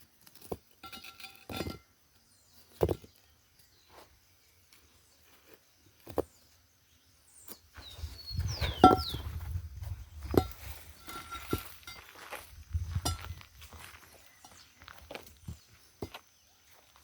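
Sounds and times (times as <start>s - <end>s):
stones knocking together: 0.2s - 1.9s, 2.6s - 3.2s, 6.0s - 6.4s, 8.4s - 13.4s
bird chirping: 2.0s - 12.0s, 13.0s - 17.0s.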